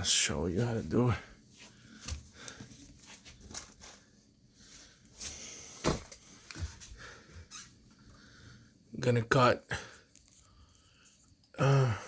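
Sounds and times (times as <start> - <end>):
faint handling clicks and rustles: 0.6 - 8.3, 9.9 - 11.6.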